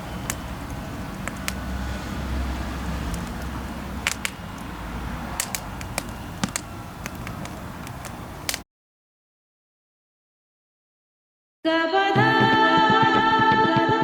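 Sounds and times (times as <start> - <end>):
fire popping: 0.0 - 8.6
wood fire crackling: 0.0 - 8.6.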